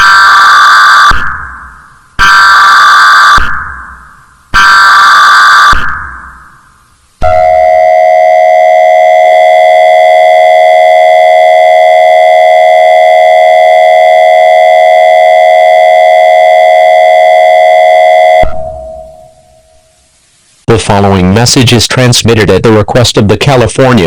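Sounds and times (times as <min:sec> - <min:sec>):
electronic dual tone alert: 0:07.2 - 0:19.8.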